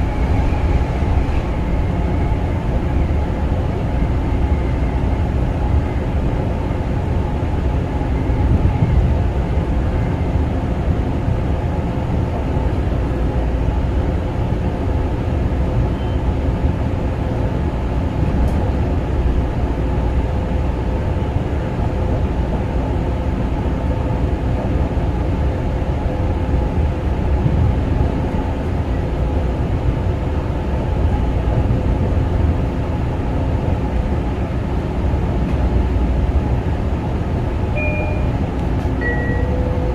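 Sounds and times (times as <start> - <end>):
train wheels rumbling on rail: 0.0 - 39.9.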